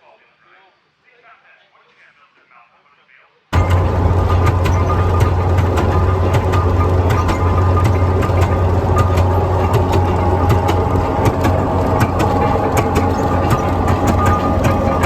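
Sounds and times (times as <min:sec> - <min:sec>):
engine running low drone: 0:03.6 - 0:15.0
sharp engine clicks: 0:03.6 - 0:15.0.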